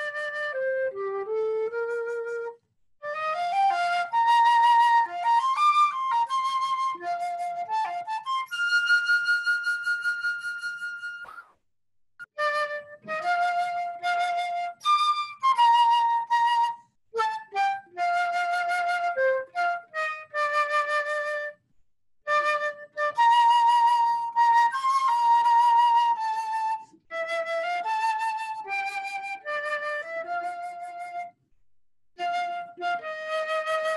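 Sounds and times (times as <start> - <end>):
flute-like hymn melody: 0.0 - 11.3, 12.2 - 21.6, 22.3 - 31.4, 32.2 - 33.9.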